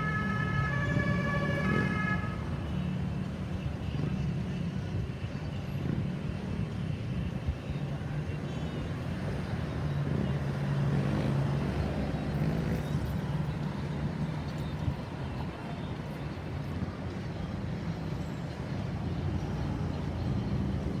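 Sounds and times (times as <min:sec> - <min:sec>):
road traffic engine hum: 0:00.0 - 0:04.6.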